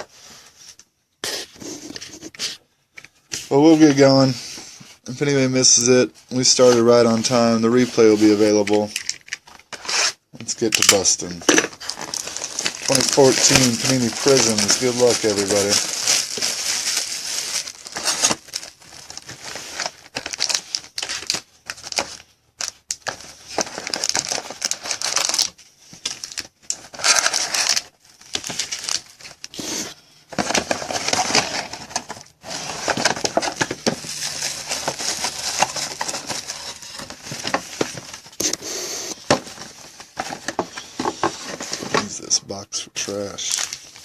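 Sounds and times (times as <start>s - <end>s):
plastic wrapping crinkling and tearing: 6.4s - 38.6s, 43.0s - 44.0s.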